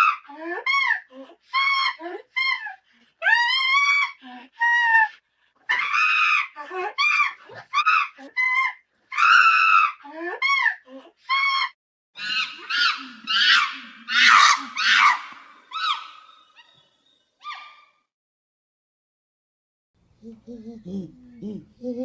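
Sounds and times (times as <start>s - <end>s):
chimpanzee-like ape screams: 0.0s - 2.6s, 5.7s - 18.0s.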